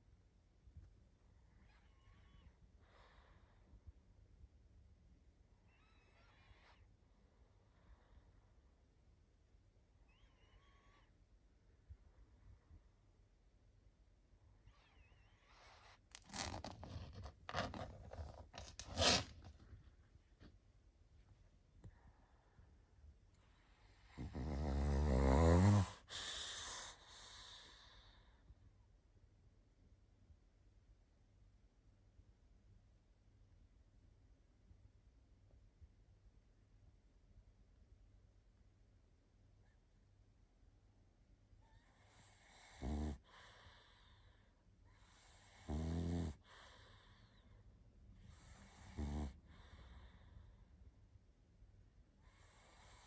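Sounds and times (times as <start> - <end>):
dog snoring: 23.4 - 28.3, 41.6 - 47.4, 48.2 - 50.4, 52.2 - 53.0.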